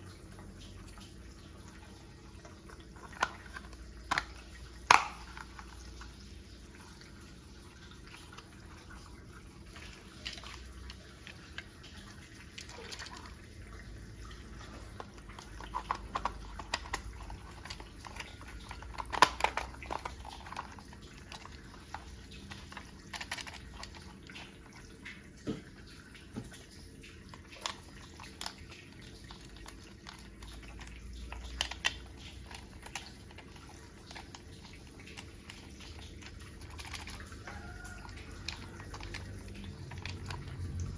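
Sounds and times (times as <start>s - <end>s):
plastic toy parts clicking: 3.0s - 6.0s, 14.9s - 24.4s, 27.6s - 40.9s.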